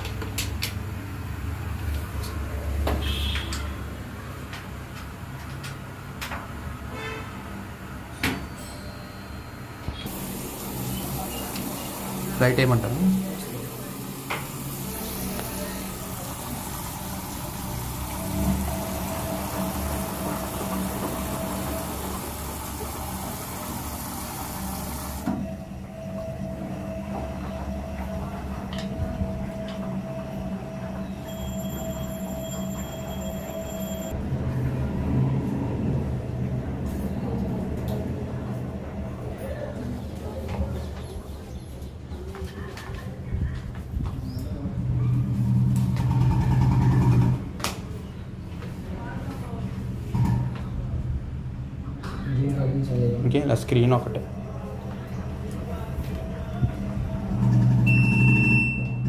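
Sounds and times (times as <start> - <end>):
washing machine motor hum: 10.0 - 41.0, 43.9 - 59.0
rushing hissing water: 10.1 - 25.3.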